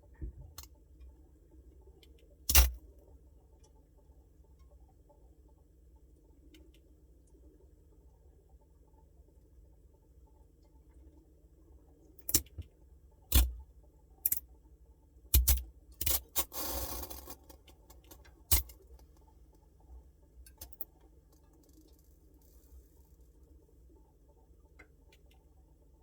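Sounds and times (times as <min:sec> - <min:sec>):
refrigerator hum: 0:00.0 - 0:26.0
sharp clicks and ticks: 0:15.4 - 0:16.2.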